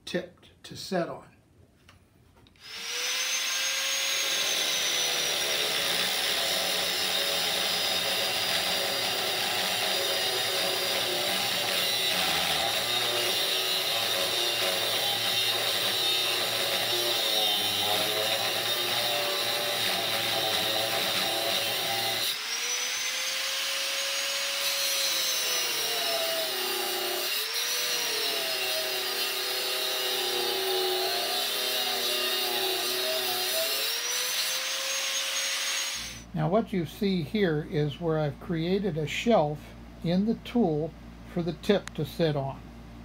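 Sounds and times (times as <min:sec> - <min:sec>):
power tool motor cutting metal: 0:02.6 - 0:36.2.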